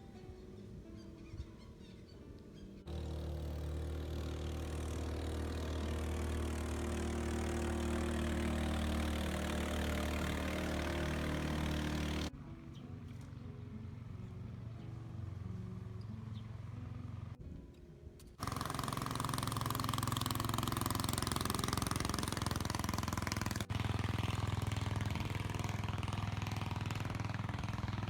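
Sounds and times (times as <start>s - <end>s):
small boat engine humming: 2.9s - 17.4s, 18.4s - 28.0s.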